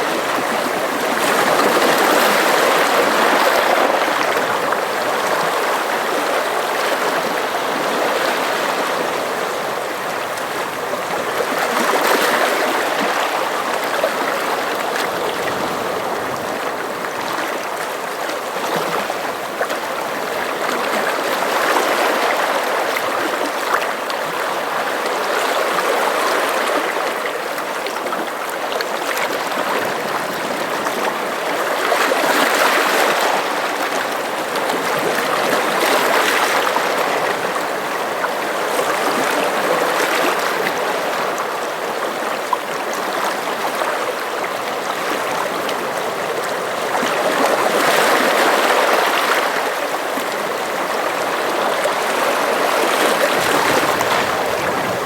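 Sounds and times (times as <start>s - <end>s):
sea water washing against shore: 29.2s - 55.0s.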